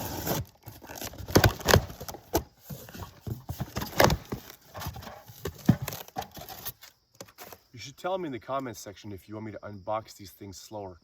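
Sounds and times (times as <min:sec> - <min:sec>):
box rustling: 0:00.0 - 0:07.7
knocks and thumps: 0:01.3 - 0:06.6.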